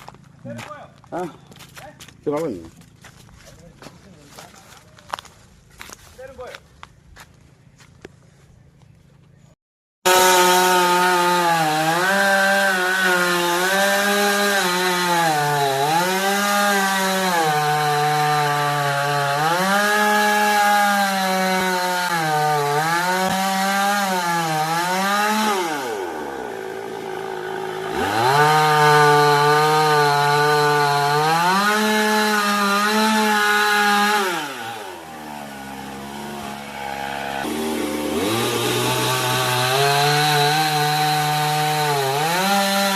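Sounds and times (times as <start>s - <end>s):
chainsaw cutting wood: 10.0s - 42.9s.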